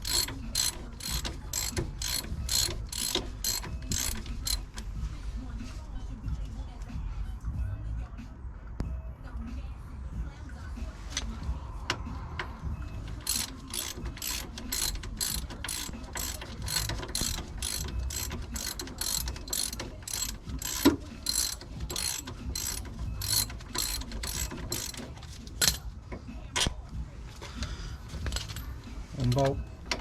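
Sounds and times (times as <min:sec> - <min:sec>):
socket ratchet clicking: 0:00.0 - 0:04.8, 0:12.4 - 0:25.8, 0:28.3 - 0:28.6.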